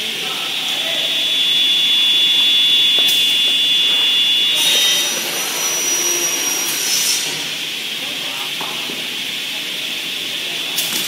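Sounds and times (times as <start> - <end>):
cutting machine whining: 0.0 - 7.7.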